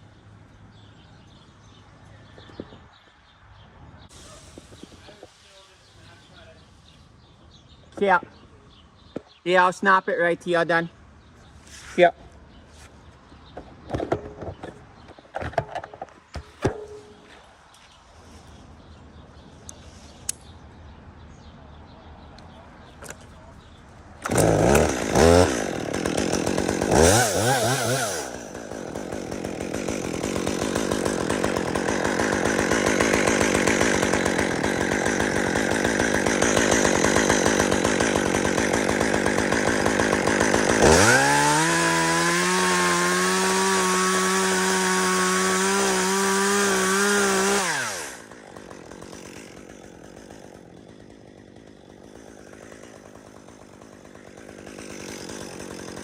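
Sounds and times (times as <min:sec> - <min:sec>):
chainsaw revving and cutting wood: 0:24.2 - 0:56.0.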